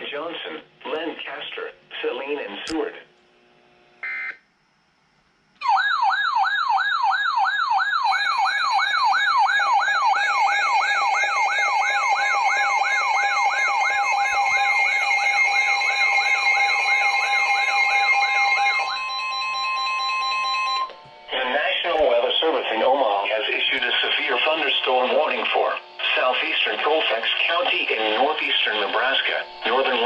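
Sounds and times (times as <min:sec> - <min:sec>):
wailing alert siren: 0:05.6 - 0:21.0
steady alarm tones: 0:05.6 - 0:30.0.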